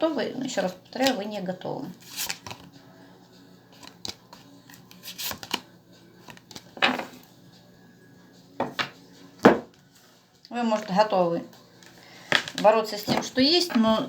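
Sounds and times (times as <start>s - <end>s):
cards flicking and slapping: 2.0s - 2.7s, 3.8s - 6.8s.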